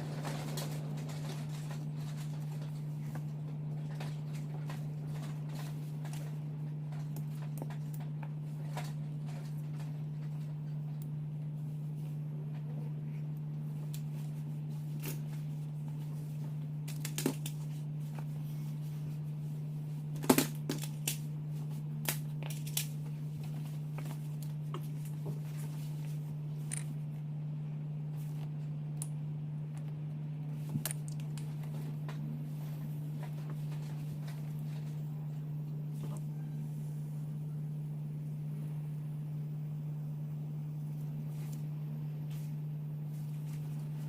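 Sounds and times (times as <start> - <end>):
low hum: 0.0 - 44.0
clicks snips and rustles of wiring: 16.8 - 18.3, 20.1 - 25.8, 28.3 - 32.2.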